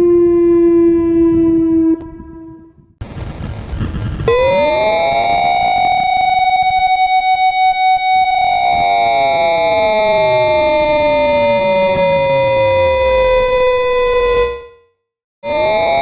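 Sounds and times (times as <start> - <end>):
burst of rough noise: 3.0 - 6.7
gliding electronic siren tones: 4.0 - 14.8, 15.4 - 16.0.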